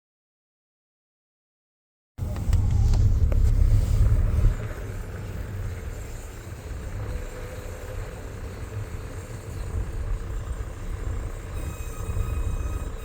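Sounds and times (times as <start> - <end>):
car rolling rumble: 2.2 - 13.0
brake shield scraping disc: 2.3 - 4.7.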